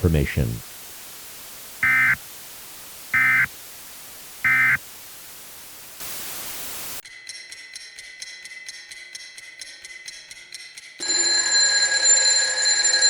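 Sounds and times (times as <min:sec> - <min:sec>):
static hiss: 0:00.0 - 0:07.0
digital data tone bursts: 0:01.8 - 0:02.2, 0:03.1 - 0:03.5, 0:04.4 - 0:04.8.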